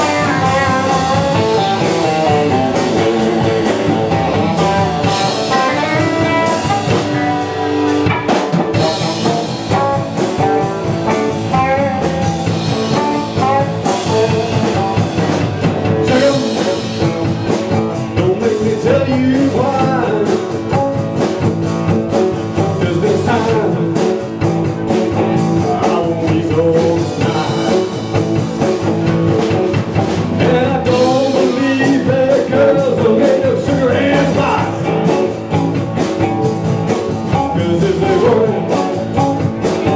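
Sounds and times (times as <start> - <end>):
bending guitar notes: 0.0 - 18.3
blues-rock band playing: 0.0 - 39.9.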